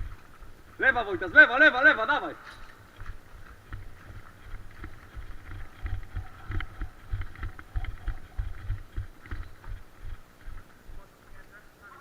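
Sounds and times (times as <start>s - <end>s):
gear clicking and rattling: 0.0s - 11.6s
low thumping footsteps: 0.0s - 11.6s.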